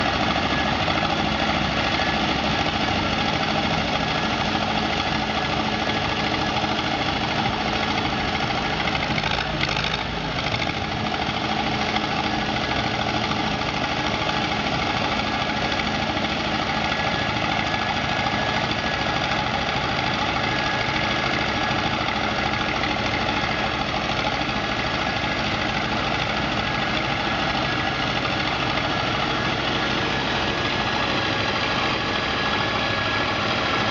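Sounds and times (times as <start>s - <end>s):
road roller engine running: 0.0s - 33.9s.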